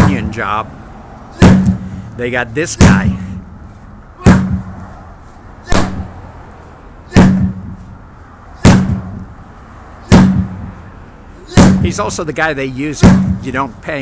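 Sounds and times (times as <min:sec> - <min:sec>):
heavy blows on a tire: 0:00.0 - 0:00.5, 0:01.3 - 0:02.2, 0:02.8 - 0:03.6, 0:04.2 - 0:04.8, 0:05.6 - 0:06.3, 0:07.1 - 0:08.0, 0:08.6 - 0:09.4, 0:10.0 - 0:10.8, 0:11.5 - 0:12.2, 0:12.9 - 0:13.6.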